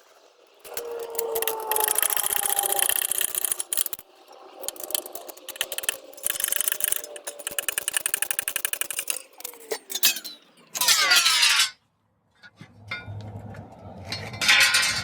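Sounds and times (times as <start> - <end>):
ratchet wrench clicking: 0.6 - 4.0, 4.6 - 9.8.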